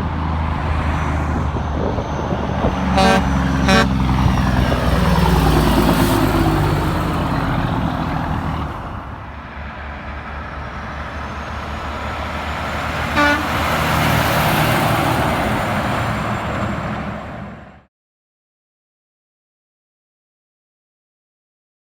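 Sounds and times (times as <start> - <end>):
heavy truck passing: 0.0 - 17.9
truck horn blast: 2.8 - 4.4, 13.0 - 14.2.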